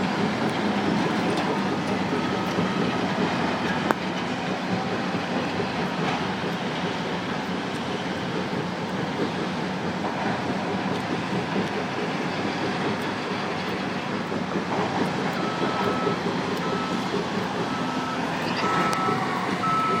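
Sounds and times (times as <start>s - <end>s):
excavator hydraulic hammer: 0.0s - 20.0s
backup alarm beeping: 17.6s - 20.0s.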